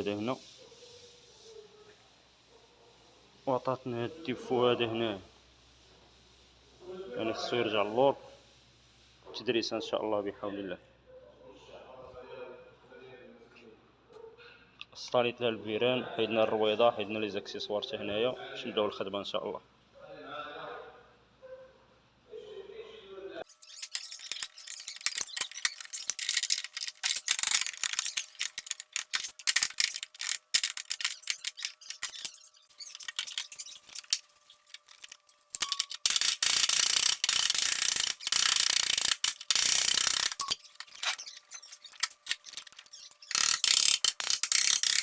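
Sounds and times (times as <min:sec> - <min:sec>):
metallic ratcheting clicks: 0:23.6 - 0:45.0.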